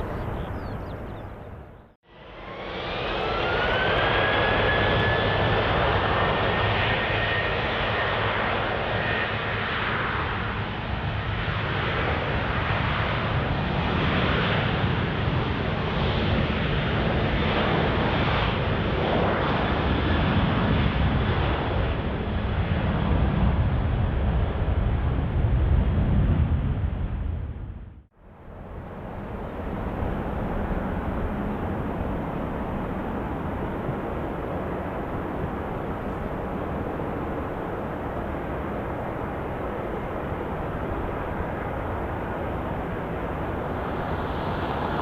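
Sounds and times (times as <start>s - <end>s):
jet engines whining: 28.4s - 45.0s.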